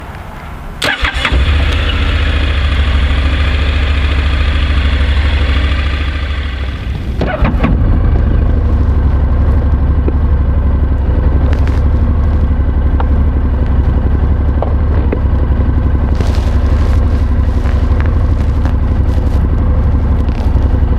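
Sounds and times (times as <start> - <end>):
motorcycle engine idling: 0.9 - 20.9
fabric rustling on microphone: 8.2 - 9.6, 11.4 - 12.6, 15.7 - 20.9.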